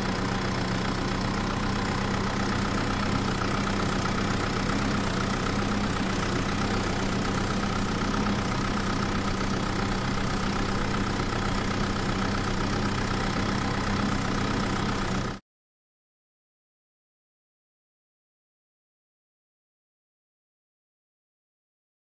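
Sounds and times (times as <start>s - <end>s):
vehicle engine idling: 0.0s - 15.4s.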